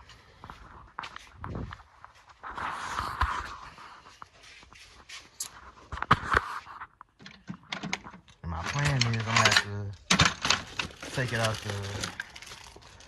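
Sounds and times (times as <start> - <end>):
footsteps and scuffing: 0.0 - 7.2
rustling: 0.6 - 13.0.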